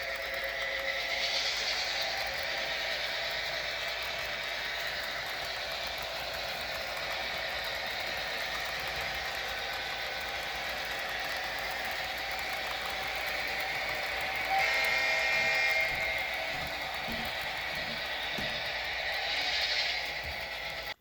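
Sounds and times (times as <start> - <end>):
diesel locomotive engine: 0.0 - 21.0
locomotive horn blast: 14.4 - 17.3.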